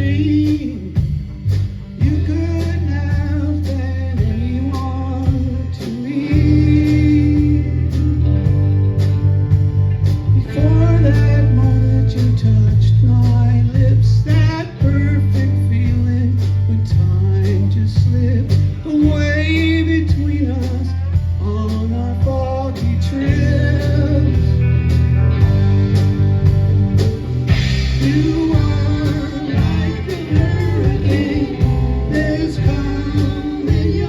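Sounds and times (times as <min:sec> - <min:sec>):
person singing with vibrato: 0:00.0 - 0:01.2, 0:02.0 - 0:08.5, 0:10.3 - 0:24.6, 0:27.6 - 0:34.0
guitar: 0:00.0 - 0:34.0
heavy bass: 0:00.0 - 0:34.0
steady drum beat: 0:00.0 - 0:34.0.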